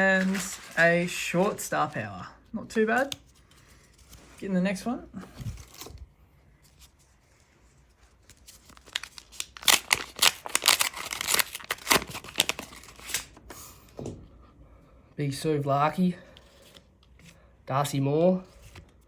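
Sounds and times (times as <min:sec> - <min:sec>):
wrapper tearing and crinkling: 0:00.0 - 0:01.7, 0:08.2 - 0:13.4.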